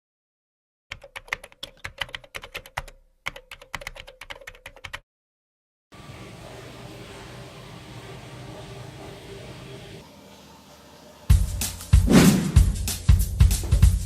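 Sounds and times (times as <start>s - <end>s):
rapid keyboard typing: 0.9s - 5.0s.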